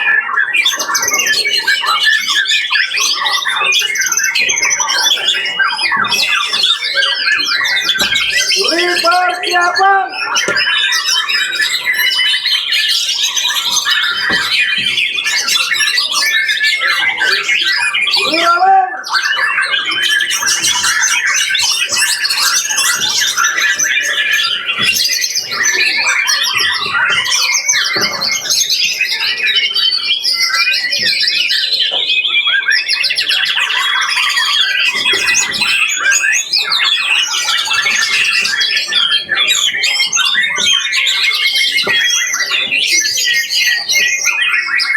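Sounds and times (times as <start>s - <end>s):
songbirds singing: 0.0s - 44.9s.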